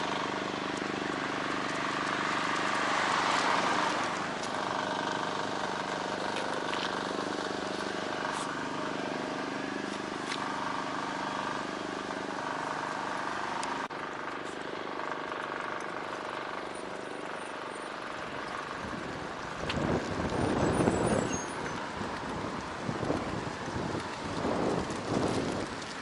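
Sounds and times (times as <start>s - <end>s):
street traffic: 0.0s - 26.0s
vehicle engine humming: 0.0s - 26.0s
wind buffeting microphone: 18.8s - 26.0s.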